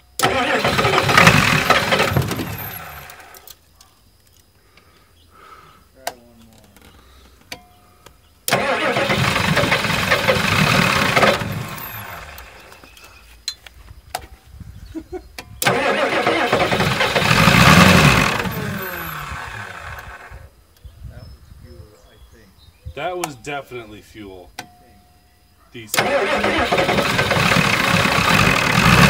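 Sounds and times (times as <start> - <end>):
diesel engine cranked by starter: 0.0 - 3.5, 8.5 - 13.2, 15.6 - 20.5, 25.9 - 29.0.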